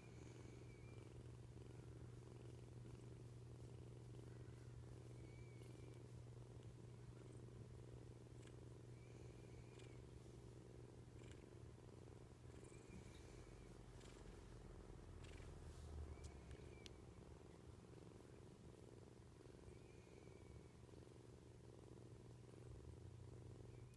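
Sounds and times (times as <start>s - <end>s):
kitten purring: 0.0s - 23.9s.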